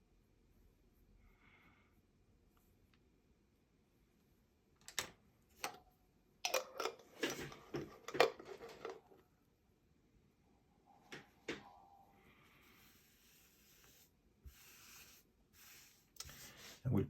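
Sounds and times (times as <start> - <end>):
objects clattering: 6.5 - 9.2.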